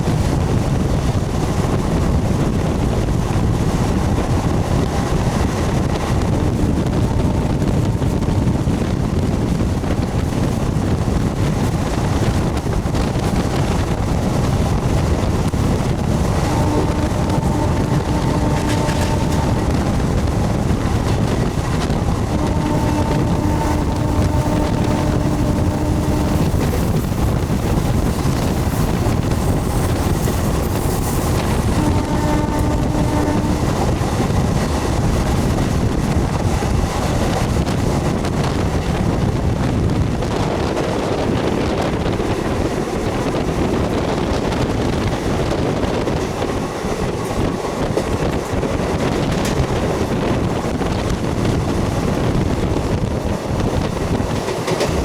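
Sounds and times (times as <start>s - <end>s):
train wheels rumbling on rails: 0.0s - 55.0s
wind across microphone: 0.0s - 55.0s
train horn blasts: 4.7s - 8.9s, 15.6s - 36.4s.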